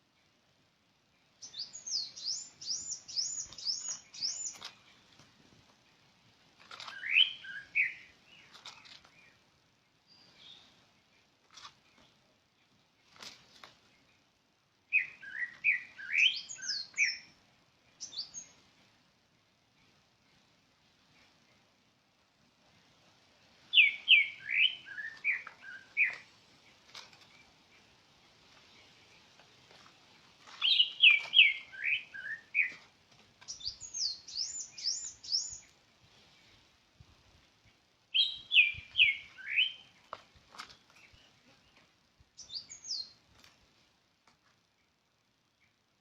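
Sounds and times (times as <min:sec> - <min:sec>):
bird singing whistled notes: 0:01.4 - 0:04.7, 0:06.8 - 0:08.5, 0:14.9 - 0:17.3, 0:18.0 - 0:18.6, 0:23.7 - 0:26.2, 0:30.6 - 0:32.8, 0:33.5 - 0:35.7, 0:38.1 - 0:40.0, 0:42.4 - 0:43.2
bird whistling arched notes: 0:38.2 - 0:39.8.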